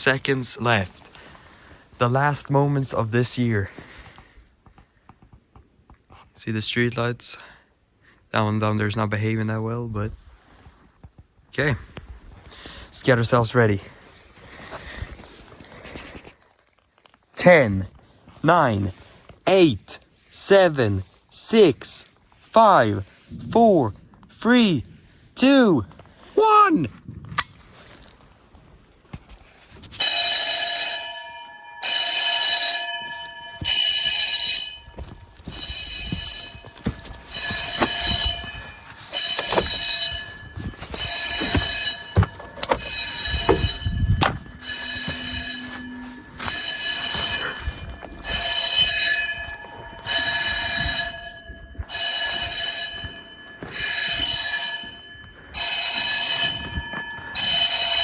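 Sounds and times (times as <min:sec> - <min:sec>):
fire alarm bells ringing: 0:29.9 - 0:58.0.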